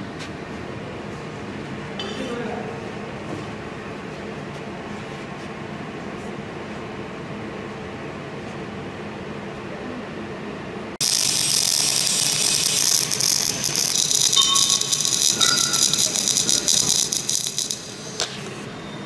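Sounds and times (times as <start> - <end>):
welding arc crackling: 11.0 - 18.7.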